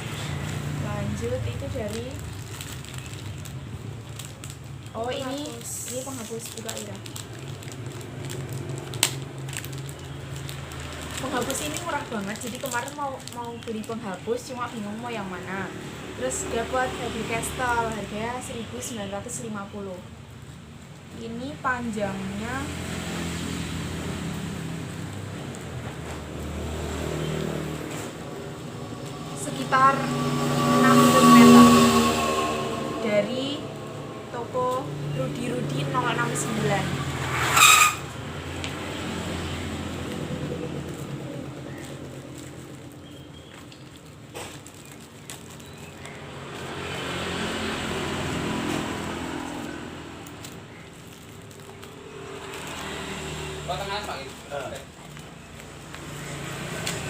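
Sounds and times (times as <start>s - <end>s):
vehicles passing: 0.0s - 57.0s
low hum: 27.8s - 36.0s.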